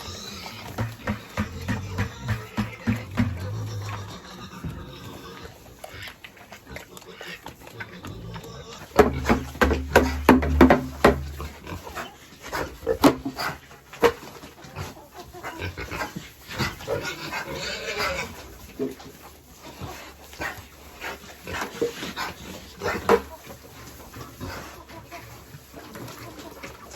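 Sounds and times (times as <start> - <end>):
pigs grunting and squealing: 0.0 - 26.9.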